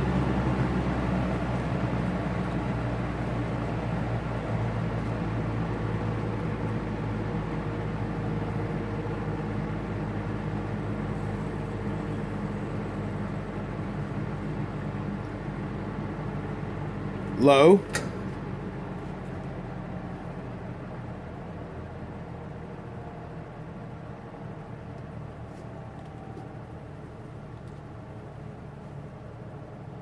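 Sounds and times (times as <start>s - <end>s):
box fan humming and rushing air: 0.0s - 21.2s.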